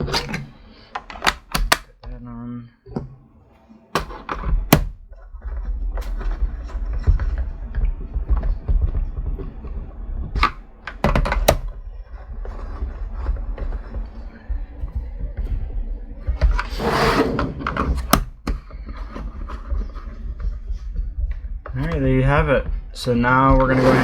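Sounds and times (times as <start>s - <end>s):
plastic case parts clicking: 0.0s - 1.9s, 4.0s - 5.0s, 10.4s - 11.7s, 18.0s - 18.4s.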